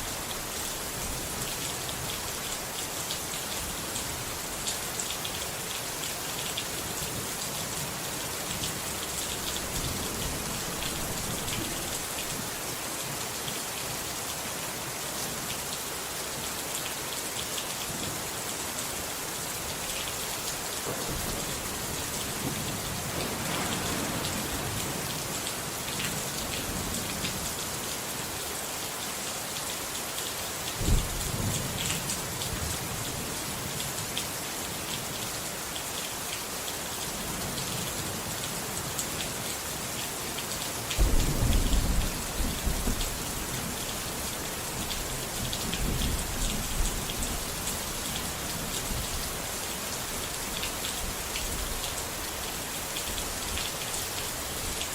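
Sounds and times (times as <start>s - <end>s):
steady rain falling: 0.0s - 54.9s
low thunder clap: 21.0s - 27.0s, 41.0s - 43.1s.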